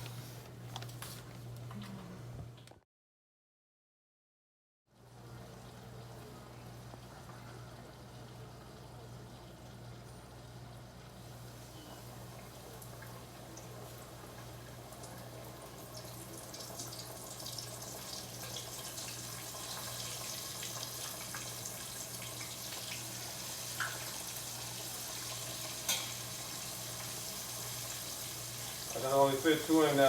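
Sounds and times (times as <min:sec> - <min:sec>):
meat sizzling in frying pan: 0:15.6 - 0:30.0.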